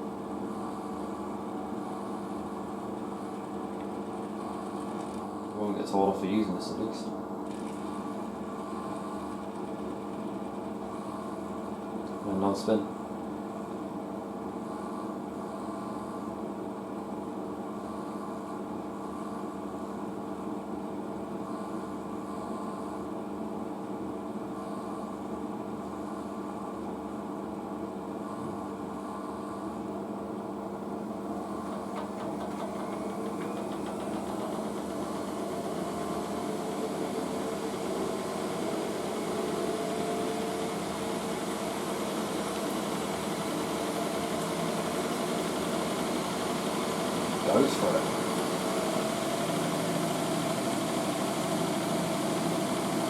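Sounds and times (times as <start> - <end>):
washing machine motor hum and whine: 0.0 - 53.0.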